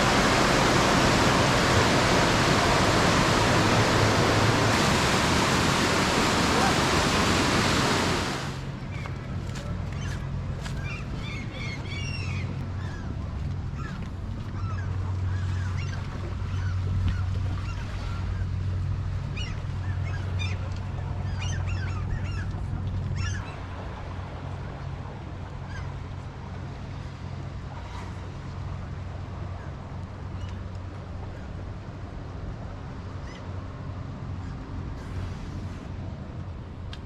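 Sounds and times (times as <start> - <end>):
birds calling: 0.0 - 9.1
low hum: 0.0 - 9.3.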